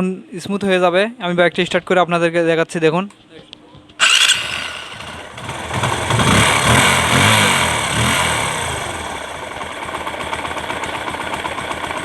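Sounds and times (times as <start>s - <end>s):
motorcycle engine idling: 4.0s - 12.0s.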